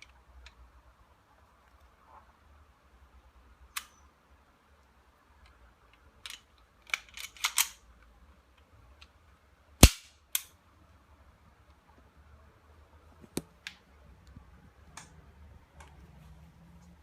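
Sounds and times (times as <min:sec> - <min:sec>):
pistol action metallic clicks: 0:06.3 - 0:07.8, 0:09.8 - 0:10.6.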